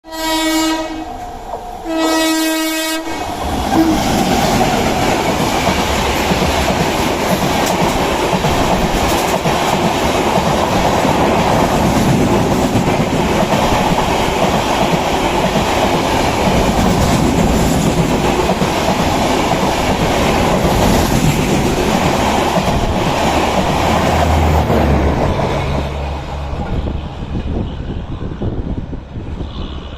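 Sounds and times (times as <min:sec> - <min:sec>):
train horn blasts: 0:00.0 - 0:01.2, 0:01.8 - 0:04.0
train wheels on track: 0:00.1 - 0:29.9.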